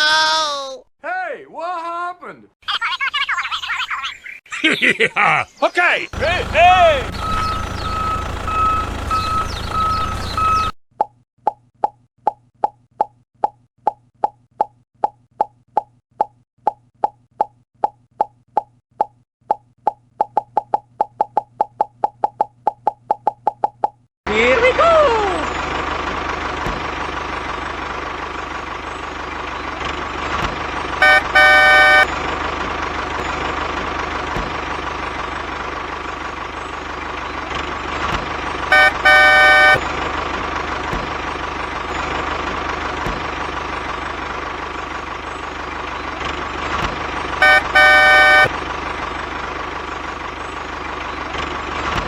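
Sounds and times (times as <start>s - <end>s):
vehicle horn tooting: 6.2s - 10.7s, 31.0s - 32.2s, 38.7s - 39.9s, 47.4s - 48.6s.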